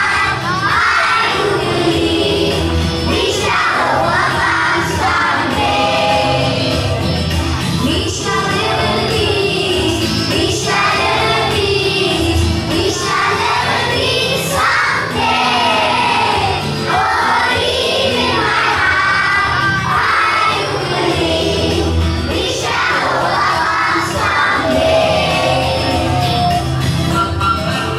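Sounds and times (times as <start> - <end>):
children singing: 0.0 - 27.7
people singing: 0.0 - 27.7.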